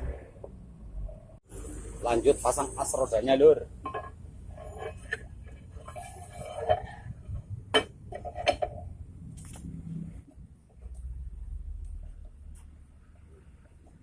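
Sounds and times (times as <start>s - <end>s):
metal scraping: 2.0s - 10.3s.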